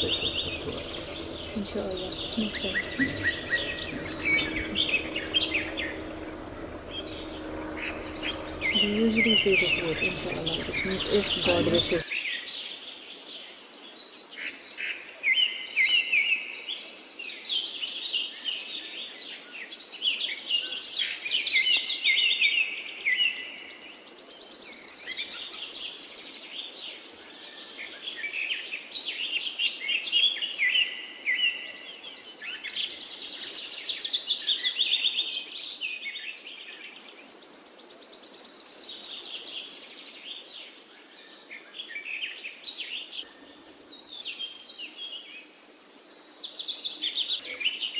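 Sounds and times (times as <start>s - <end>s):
high buzzy bird trill: 0.0s - 12.0s
songbirds singing and chirping: 0.0s - 12.0s.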